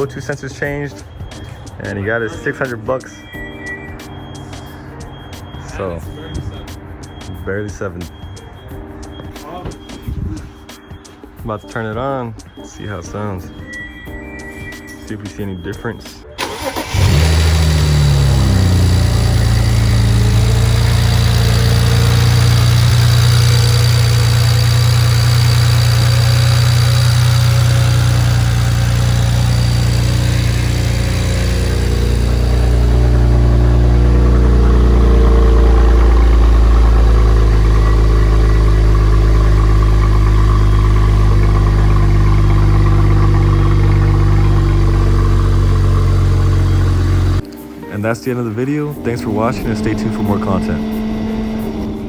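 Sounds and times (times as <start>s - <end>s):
car engine revving and idling: 16.4s - 47.4s, 49.2s - 52.0s.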